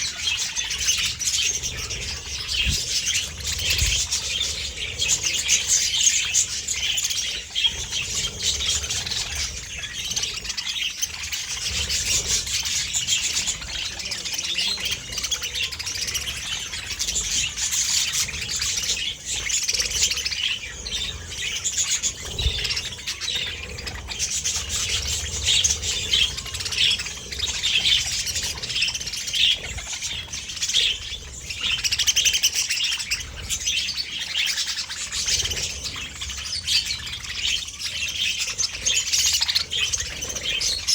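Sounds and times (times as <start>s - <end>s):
budgerigars chirping: 0.0s - 40.9s.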